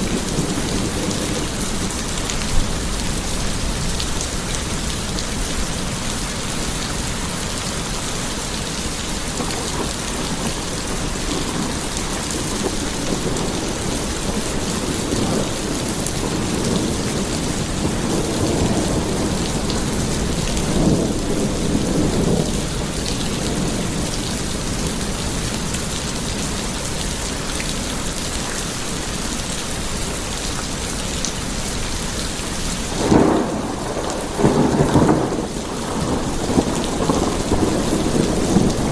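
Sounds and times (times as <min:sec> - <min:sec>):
rolling thunder: 0:00.0 - 0:26.6, 0:32.8 - 0:38.9
heavy rain falling: 0:00.0 - 0:38.9
sharp thunder clap: 0:09.3 - 0:24.1, 0:32.9 - 0:38.9.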